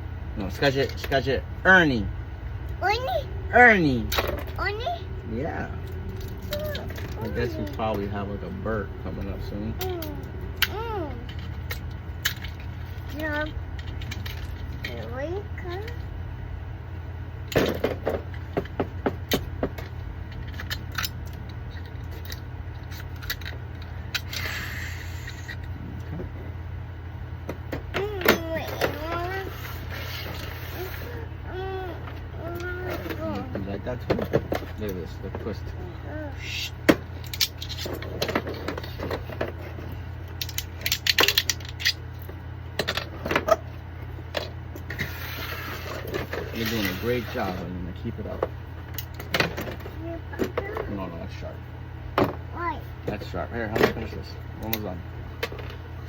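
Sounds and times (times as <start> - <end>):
steady low hum: 0.0 - 56.0
plastic parts clicking and rattling: 19.7 - 24.4, 37.2 - 43.6.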